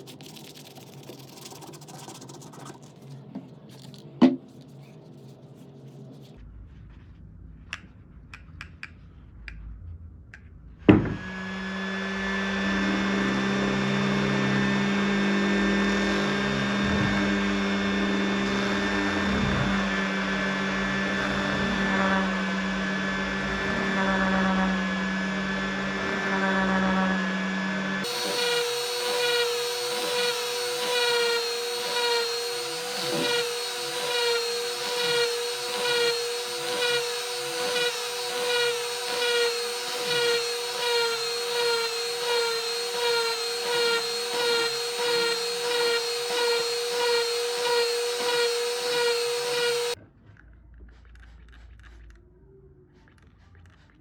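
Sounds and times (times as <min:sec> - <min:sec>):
power tool whining on metal: 0:10.9 - 0:50.0.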